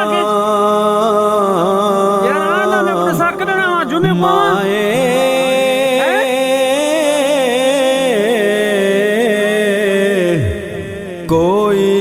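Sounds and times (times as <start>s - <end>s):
person singing long ornamented note: 0.0s - 0.7s, 2.2s - 7.6s.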